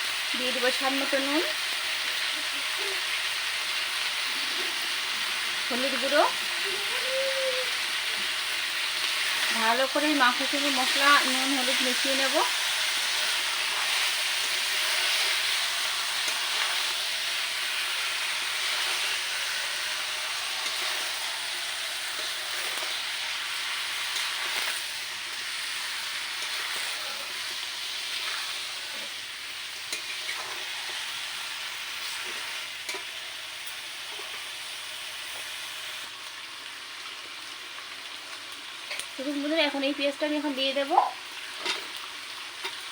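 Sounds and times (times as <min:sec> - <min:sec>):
chicken sizzling in hot oil: 0:00.0 - 0:42.9.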